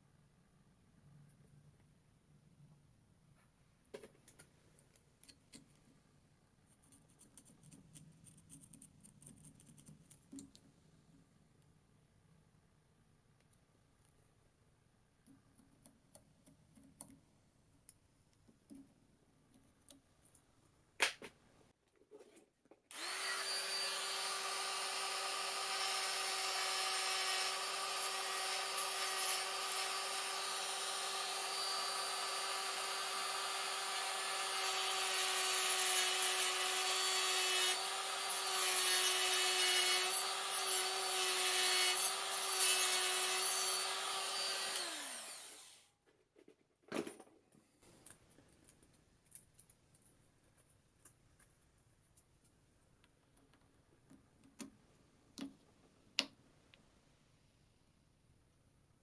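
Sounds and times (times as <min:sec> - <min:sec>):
power tool motor whine: 0:22.9 - 0:45.8.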